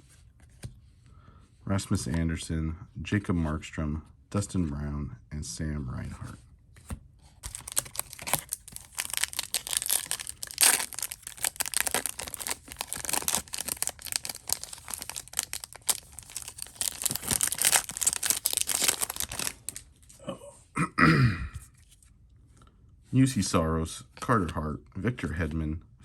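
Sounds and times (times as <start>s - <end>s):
wrapper tearing and crinkling: 7.4s - 20.2s.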